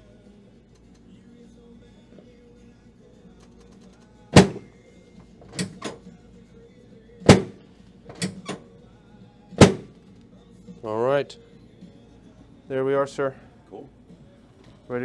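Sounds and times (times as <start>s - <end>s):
sharp knocks: 4.4s - 4.7s, 7.3s - 7.6s, 9.6s - 9.9s.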